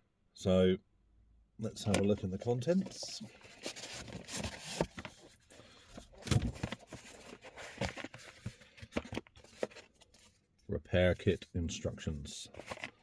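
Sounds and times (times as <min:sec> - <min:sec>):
packaging rustling: 0:01.9 - 0:10.3, 0:12.5 - 0:13.0.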